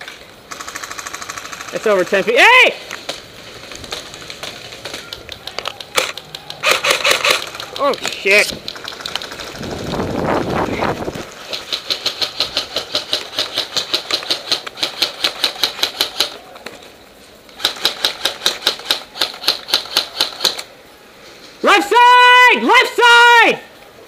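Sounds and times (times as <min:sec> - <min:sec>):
airsoft rifle firing rapidly: 0:00.5 - 0:02.4, 0:05.9 - 0:10.1, 0:11.5 - 0:16.4, 0:17.6 - 0:20.7
rustling noise: 0:02.8 - 0:15.5, 0:16.6 - 0:21.7.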